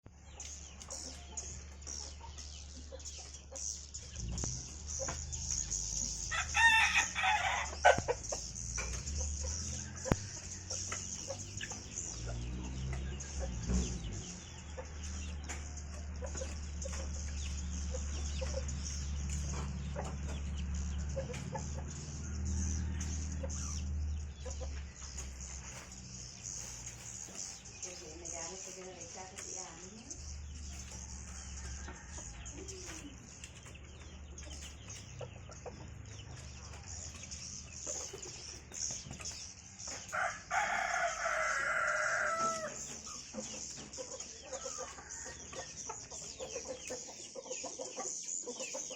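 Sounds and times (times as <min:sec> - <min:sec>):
steady low hum: 0:00.2 - 0:40.5
rooster crowing: 0:06.2 - 0:08.0, 0:09.6 - 0:11.2, 0:22.1 - 0:23.7, 0:30.9 - 0:32.9, 0:40.1 - 0:42.9.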